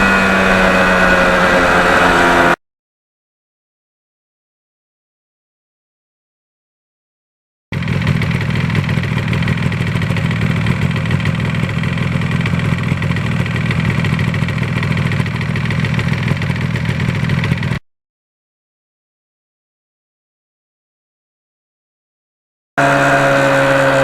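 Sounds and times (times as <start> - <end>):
motorcycle engine running: 0.0 - 2.6, 7.7 - 17.8, 22.8 - 24.0.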